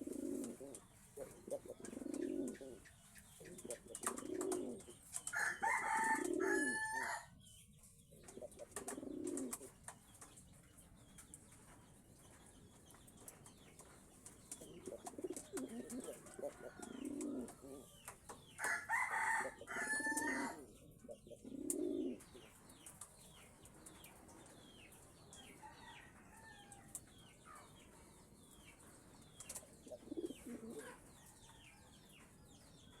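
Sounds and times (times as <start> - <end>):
pigeons cooing: 0.0 - 7.2, 8.2 - 9.7, 14.6 - 18.0, 18.6 - 22.4, 29.8 - 31.1
rooster crowing: 5.4 - 7.3, 18.6 - 20.6.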